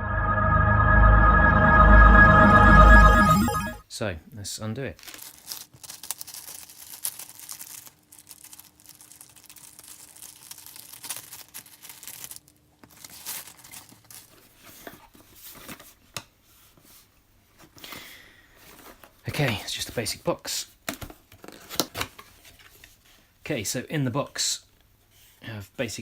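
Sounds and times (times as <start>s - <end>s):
box packaging being torn open: 5.0s - 14.2s.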